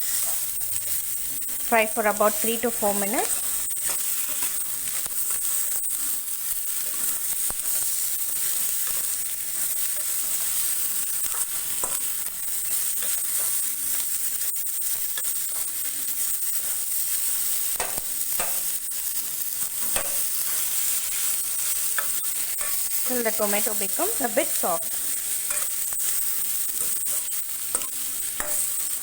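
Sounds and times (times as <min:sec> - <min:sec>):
food sizzling in oil: 0:00.0 - 0:29.0.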